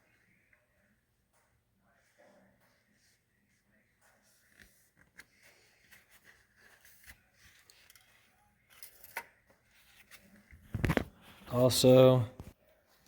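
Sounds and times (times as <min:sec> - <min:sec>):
faint handling clicks and scrapes: 0:04.1 - 0:11.6.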